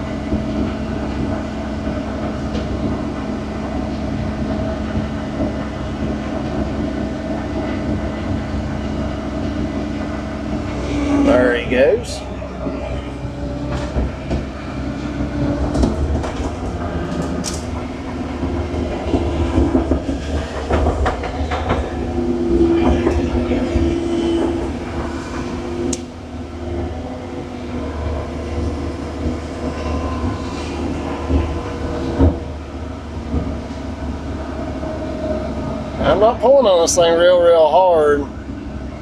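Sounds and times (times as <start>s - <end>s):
skid steer engine rumble: 0.0s - 39.0s
hydraulic whine: 8.2s - 36.2s.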